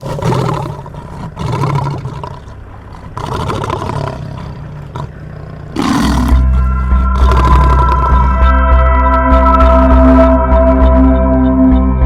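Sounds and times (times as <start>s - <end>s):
large animal roaring: 0.0s - 9.1s
bass-heavy music: 5.7s - 12.0s.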